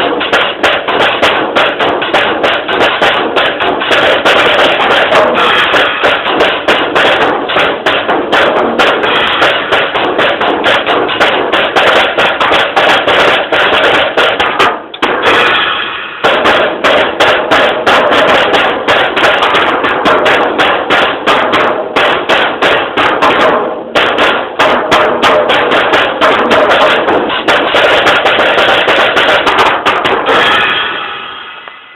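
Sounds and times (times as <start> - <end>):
cymbal ringing: 0.0 - 13.5, 15.0 - 19.6, 30.2 - 31.9
fast drum kit solo: 0.0 - 31.3.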